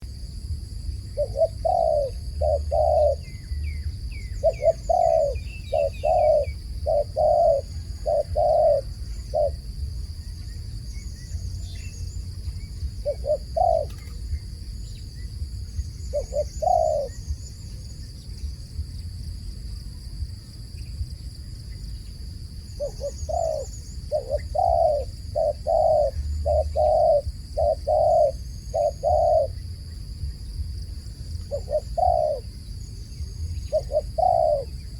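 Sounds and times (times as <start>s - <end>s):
dove cooing: 1.1s - 9.9s, 11.2s - 14.6s, 16.0s - 17.5s, 22.7s - 29.6s, 31.4s - 32.6s, 33.6s - 34.9s.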